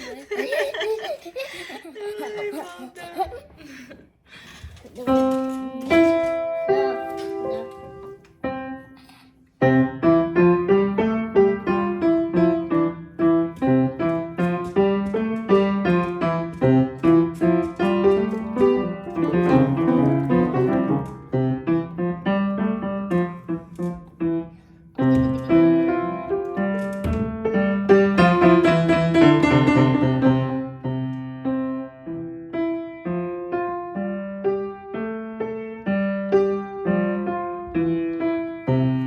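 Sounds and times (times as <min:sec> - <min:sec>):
piano played fast: 0:09.6 - 0:39.0.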